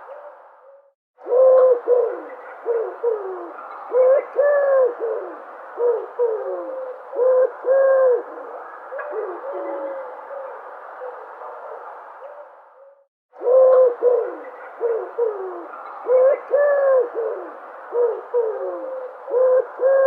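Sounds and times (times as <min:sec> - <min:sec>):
background ambience: 0:00.0 - 0:12.8, 0:13.4 - 0:20.0
dove cooing: 0:00.0 - 0:20.0.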